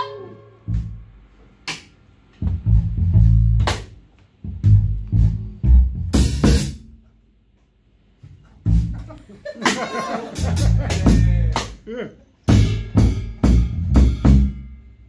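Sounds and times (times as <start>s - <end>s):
rock band playing accented hits: 4.7s - 6.9s, 8.6s - 11.8s, 12.5s - 14.7s.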